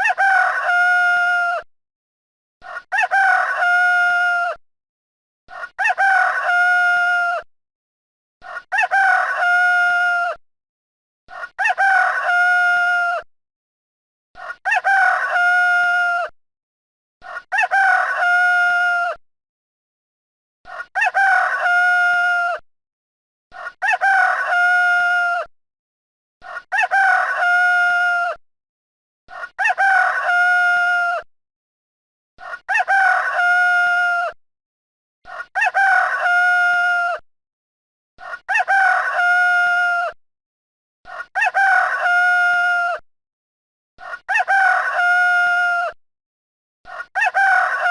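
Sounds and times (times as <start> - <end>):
rooster crowing: 0.0 - 1.6, 2.7 - 4.6, 5.8 - 7.4, 8.7 - 10.4, 11.6 - 13.2, 14.7 - 16.3, 17.5 - 19.2, 21.0 - 22.5, 23.8 - 25.4, 26.7 - 28.3, 29.6 - 31.2, 32.7 - 34.2, 35.6 - 37.1, 38.5 - 40.1, 41.4 - 43.0, 44.3 - 46.0, 47.2 - 47.9.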